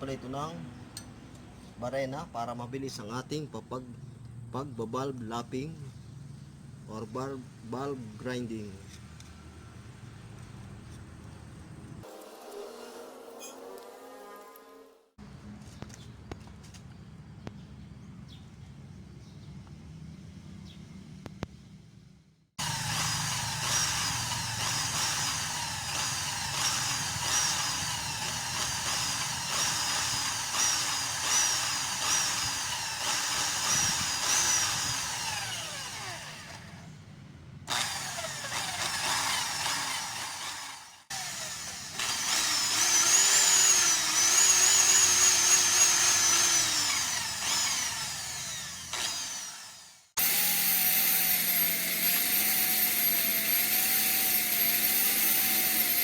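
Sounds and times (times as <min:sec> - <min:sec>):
electric drill lapping engine valve: 0:22.6 - 0:36.9, 0:37.7 - 0:56.0.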